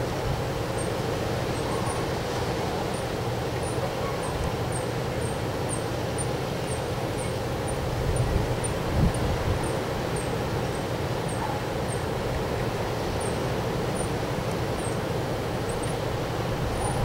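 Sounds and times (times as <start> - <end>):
wind blowing: 15.4 - 17.0
wind buffeting microphone: 15.8 - 17.0.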